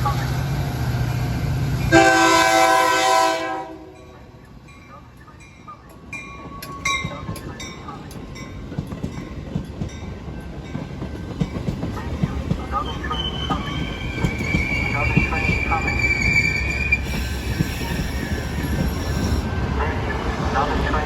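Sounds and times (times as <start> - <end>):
locomotive air horn blast: 1.9 - 4.0
train wheels clicking on rails: 5.2 - 20.4
high squeals: 12.7 - 19.6.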